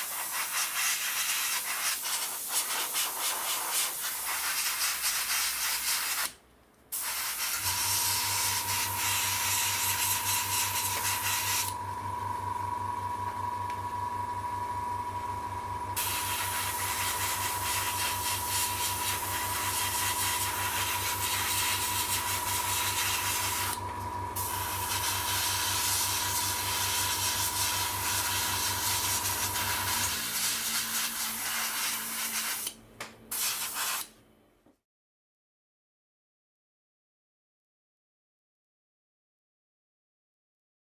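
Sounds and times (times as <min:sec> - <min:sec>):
spray paint hissing: 0:00.0 - 0:06.4, 0:07.0 - 0:11.7, 0:26.8 - 0:34.1
machine hum with thin whine: 0:07.6 - 0:33.3.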